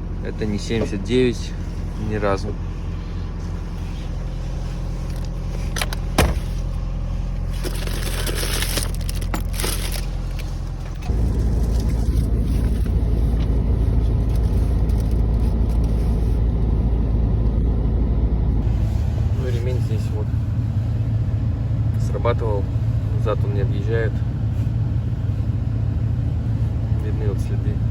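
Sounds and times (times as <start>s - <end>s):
diesel engine idling: 0.0s - 27.9s
rustling: 2.6s - 16.4s.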